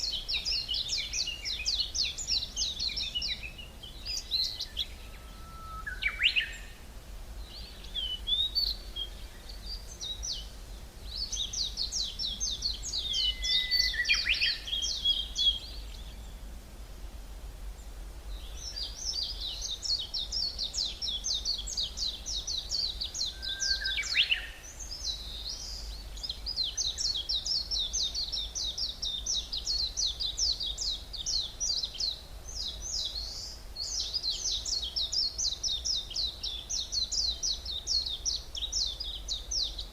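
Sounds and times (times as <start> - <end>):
upward-sweeping bird calls: 0.0 - 6.8, 12.1 - 15.7, 18.6 - 25.9
songbirds trilling: 0.0 - 16.5, 17.8 - 39.9.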